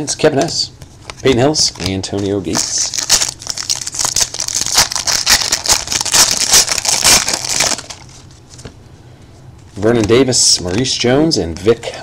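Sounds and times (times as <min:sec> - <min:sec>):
cards shuffling: 0:00.4 - 0:08.8
wrapper crinkling and tearing: 0:02.5 - 0:08.2.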